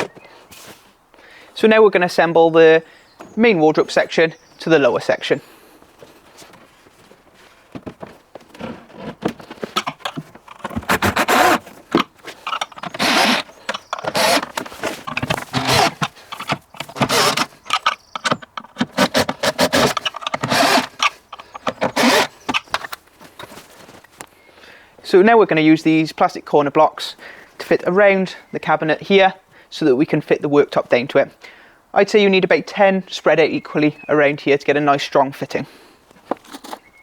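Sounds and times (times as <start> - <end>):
wood scraping and knocking on wood: 0.0 - 0.9, 5.8 - 24.3, 36.2 - 36.9.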